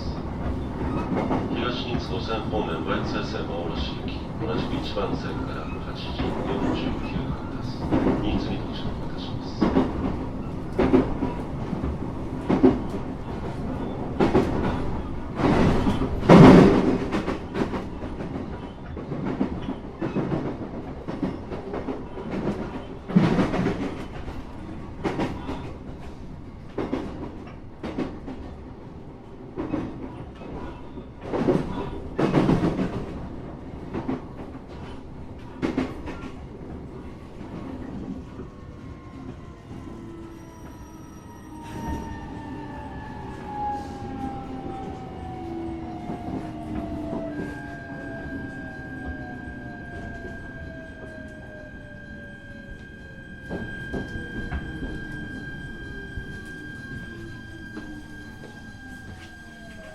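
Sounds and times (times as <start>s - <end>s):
train wheels clattering over rails: 0.0s - 28.6s.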